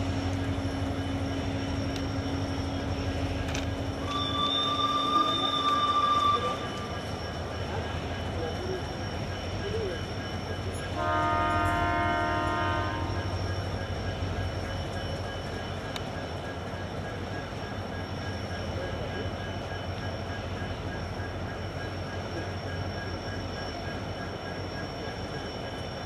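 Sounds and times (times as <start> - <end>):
train rumbling: 0.0 - 26.0
train horn blast: 4.0 - 6.6, 11.0 - 13.3.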